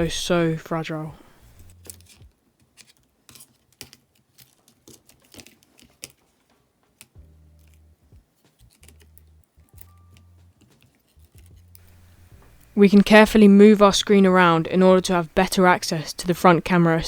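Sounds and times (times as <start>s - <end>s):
low steady hum: 0.0s - 2.0s, 11.6s - 17.0s.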